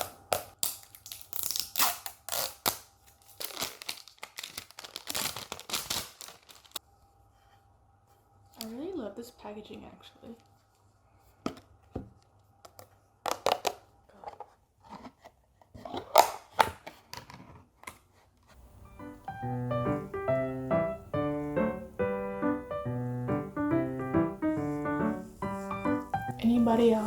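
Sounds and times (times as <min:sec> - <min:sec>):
packaging crinkling and tearing: 0:00.0 - 0:06.8
light piano music: 0:18.6 - 0:27.0.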